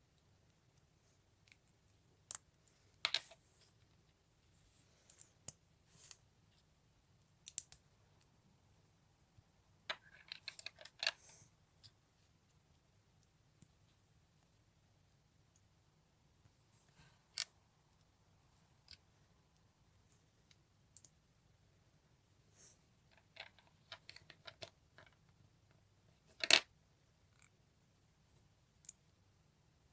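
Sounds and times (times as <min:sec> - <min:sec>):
plastic bricks clicking together: 0:26.4 - 0:26.6.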